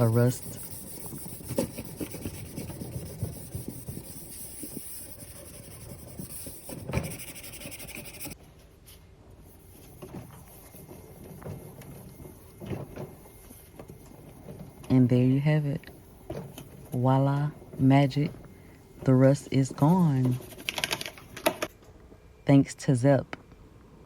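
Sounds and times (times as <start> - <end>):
scrubbing and scraping strokes: 0.0 - 8.4.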